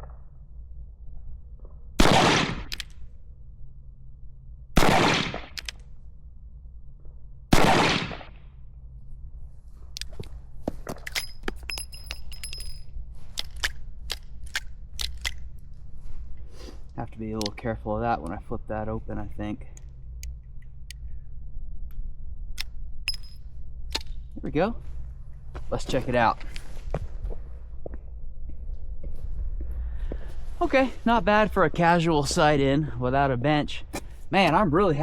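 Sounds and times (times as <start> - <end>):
metallic clicks of revolver opening: 5.6 - 5.8, 13.4 - 15.5, 22.6 - 24.2.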